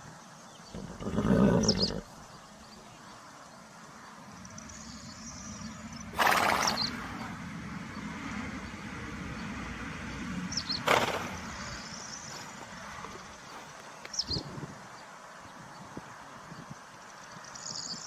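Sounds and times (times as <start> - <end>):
horse snorting: 0.7 - 2.1, 6.2 - 7.0, 10.8 - 11.4.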